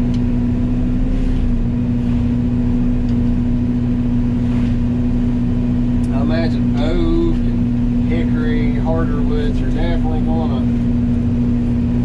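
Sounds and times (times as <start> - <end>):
constant low hum: 0.0 - 12.0
excavator diesel engine: 0.0 - 12.0.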